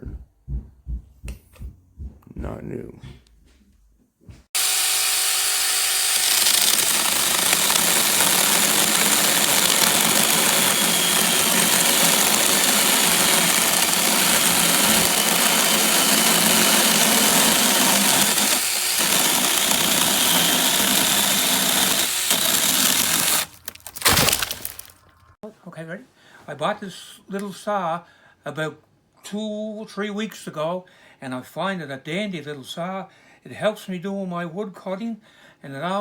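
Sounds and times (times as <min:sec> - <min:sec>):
mini chainsaw running: 0:04.6 - 0:24.9.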